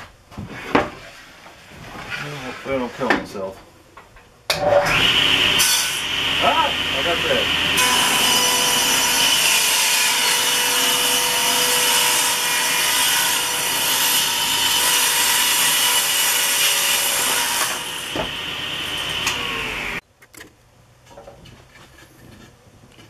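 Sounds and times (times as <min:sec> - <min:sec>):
table saw ripping wood: 0:04.6 - 0:20.0.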